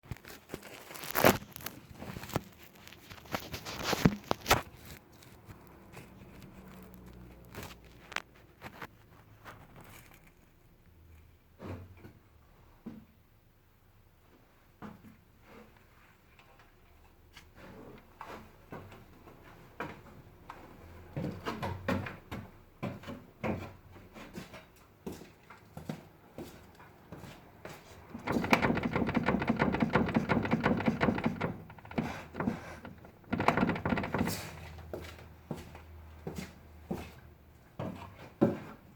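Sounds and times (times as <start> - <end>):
steering rack knocking: 28.1 - 34.6.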